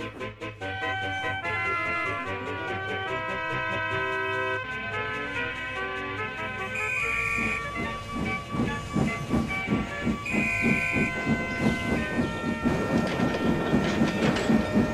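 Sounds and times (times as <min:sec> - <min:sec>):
steam locomotive chuffing: 0:00.1 - 0:14.9
steam locomotive whistle: 0:00.7 - 0:14.9
hissing steam: 0:06.5 - 0:14.9.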